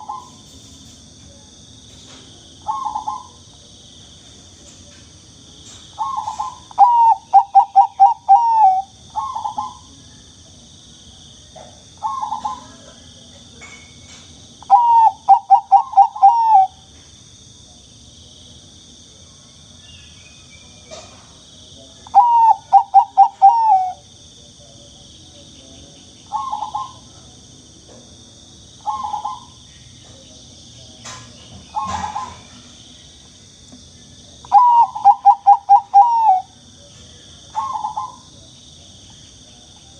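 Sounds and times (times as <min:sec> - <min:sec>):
dove cooing: 0:00.0 - 0:00.4, 0:02.6 - 0:03.4, 0:06.0 - 0:09.9, 0:12.0 - 0:12.8, 0:14.7 - 0:16.8, 0:22.1 - 0:24.0, 0:26.3 - 0:27.1, 0:28.8 - 0:29.6, 0:31.7 - 0:32.6, 0:34.5 - 0:36.6, 0:37.5 - 0:38.3.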